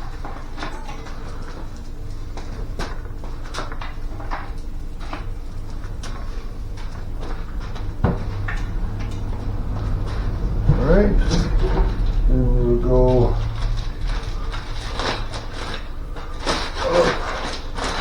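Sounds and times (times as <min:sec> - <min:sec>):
steady low rumble: 0:04.2 - 0:18.0.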